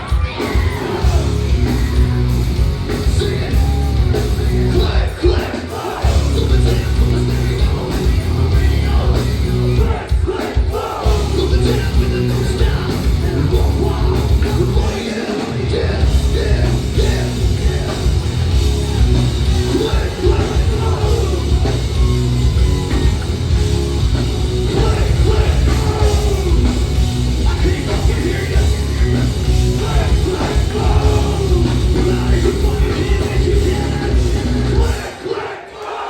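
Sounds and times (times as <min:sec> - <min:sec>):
hard rock band playing: 0:00.0 - 0:35.3
singer yelling: 0:00.0 - 0:36.0.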